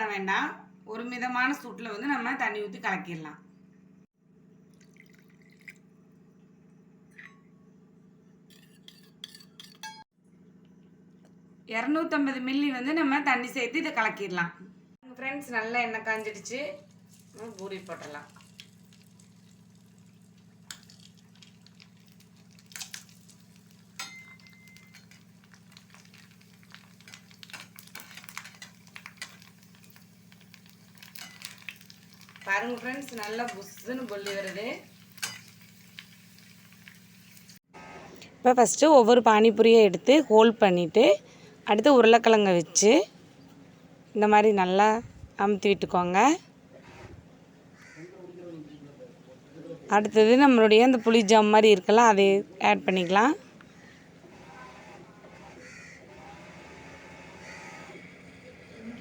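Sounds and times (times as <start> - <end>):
water pouring and dripping: 4.7 - 5.8, 17.1 - 37.6
splashes and clinks: 4.7 - 5.9, 17.1 - 29.8
food sizzling in hot oil: 16.3 - 37.7.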